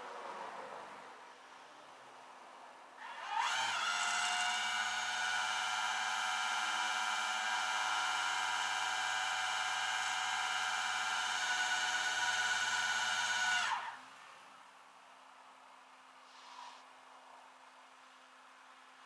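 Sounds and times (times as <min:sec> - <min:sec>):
motor whining: 0:03.0 - 0:14.0.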